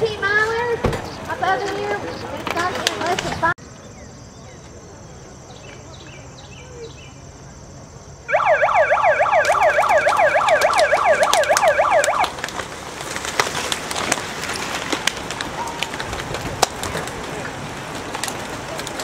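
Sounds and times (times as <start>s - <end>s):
siren yelping: 8.3s - 12.4s
sharp clicks: 9.2s - 12.6s.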